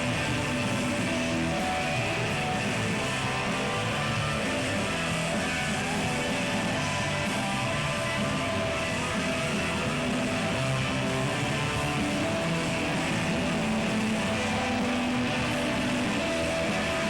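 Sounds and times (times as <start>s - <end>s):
electric guitar chords: 0.0s - 17.0s
rock band playing live: 0.0s - 17.0s.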